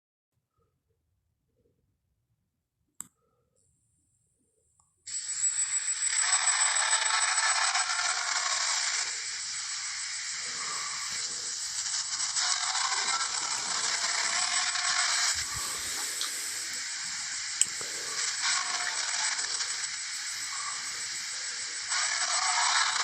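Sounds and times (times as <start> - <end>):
harsh hissing creature roar: 6.3 - 23.0.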